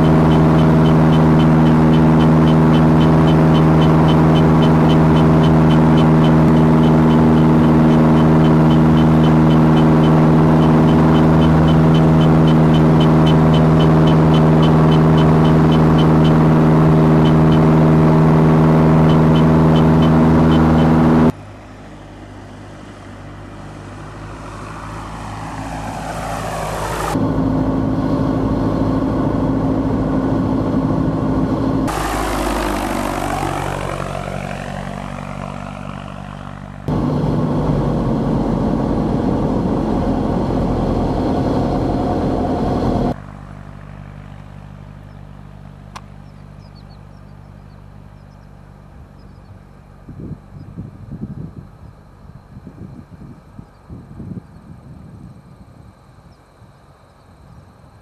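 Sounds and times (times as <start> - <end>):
fast ticking: 0.0 - 17.7
airplane passing overhead: 0.0 - 58.0
propeller airplane engine drone: 0.0 - 58.0.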